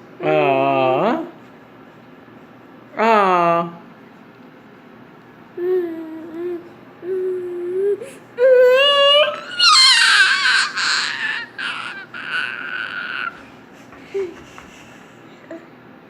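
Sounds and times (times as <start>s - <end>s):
baby vocalising: 5.6s - 13.5s
baby squealing: 8.6s - 13.4s.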